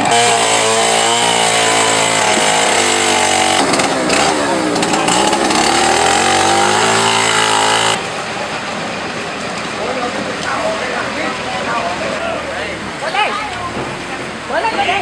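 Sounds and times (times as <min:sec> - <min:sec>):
small petrol engine revving: 0:00.0 - 0:08.1.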